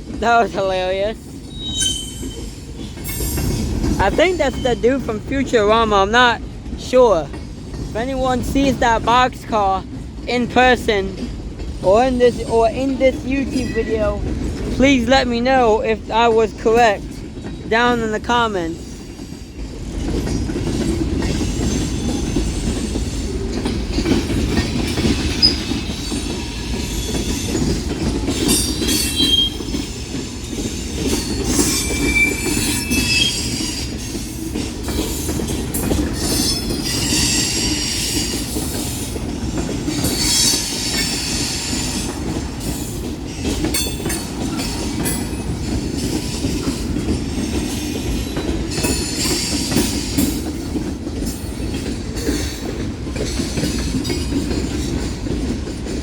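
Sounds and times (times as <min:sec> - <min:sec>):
train cars rumbling on rails: 0:00.0 - 0:56.0
high-pitched wheel squeal: 0:01.5 - 0:02.6, 0:31.6 - 0:33.9.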